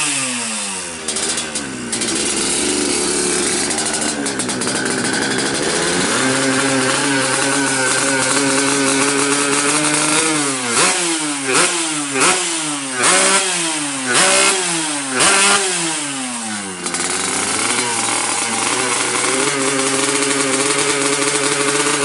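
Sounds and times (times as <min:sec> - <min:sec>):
motorcycle engine idling: 0:00.0 - 0:22.0
motorcycle engine revving: 0:00.0 - 0:22.0.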